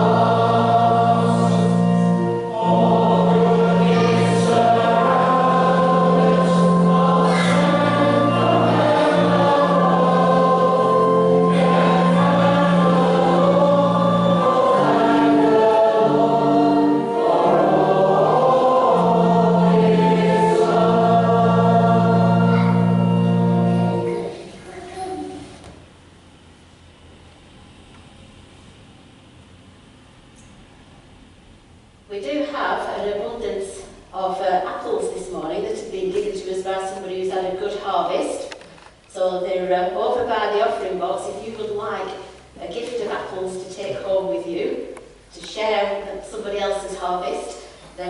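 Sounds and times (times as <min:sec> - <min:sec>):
choir singing a hymn: 0:00.0 - 0:24.4
held accompaniment chords: 0:00.0 - 0:25.4.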